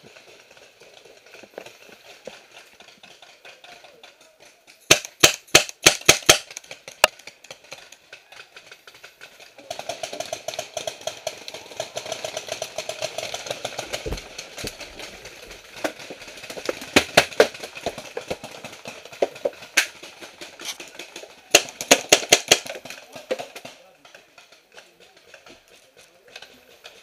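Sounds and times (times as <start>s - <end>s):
paintball markers firing: 4.7s - 8.6s, 9.9s - 22.9s.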